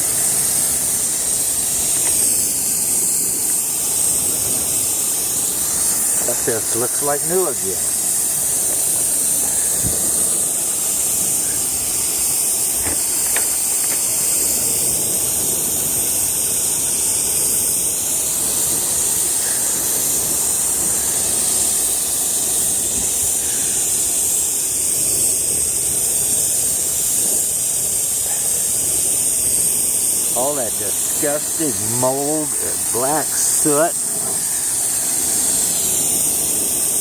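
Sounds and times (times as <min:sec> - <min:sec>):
pressure sprayer hissing: 0:00.0 - 0:37.0.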